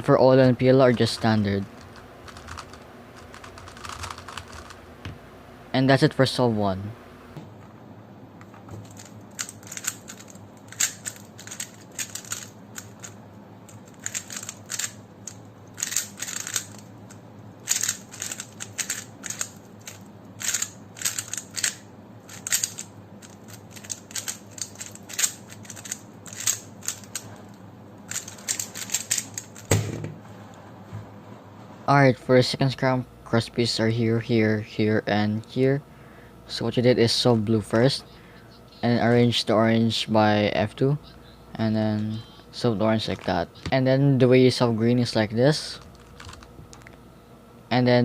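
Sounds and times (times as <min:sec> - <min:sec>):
puzzle cube clicking turns: 0:01.7 - 0:04.8, 0:08.9 - 0:13.2, 0:13.8 - 0:16.9, 0:17.6 - 0:27.2, 0:28.1 - 0:29.7.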